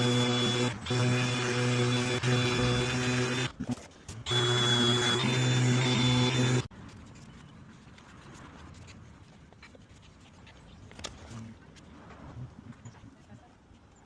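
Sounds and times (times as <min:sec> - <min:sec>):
power tool motor whining: 0:00.0 - 0:06.7.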